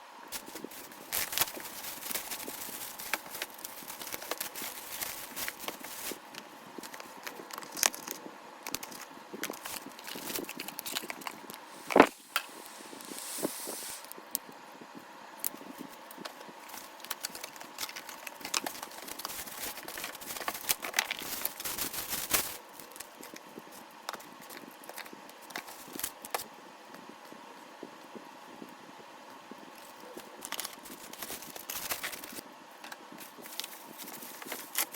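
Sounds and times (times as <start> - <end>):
packaging crinkling: 0.3 - 14.1, 15.9 - 23.5, 24.1 - 26.5, 29.8 - 32.4, 33.2 - 34.9
hissing rustle: 9.6 - 14.2.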